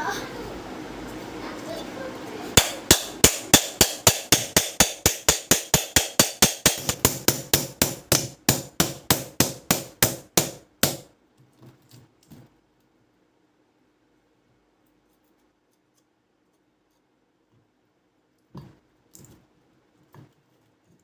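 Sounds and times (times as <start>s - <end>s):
rapid sharp knocks: 2.6s - 11.1s.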